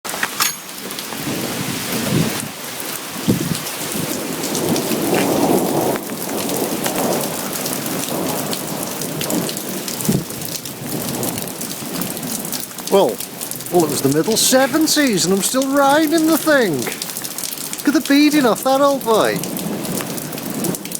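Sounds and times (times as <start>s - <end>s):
heavy rain pouring: 0.7s - 20.9s
rolling thunder: 3.2s - 11.5s.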